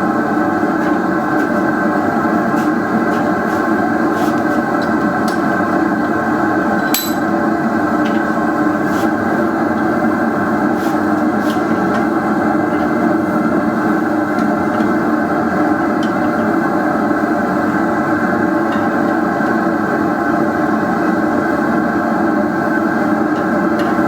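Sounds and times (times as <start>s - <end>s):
metallic ping: 6.8s - 7.3s.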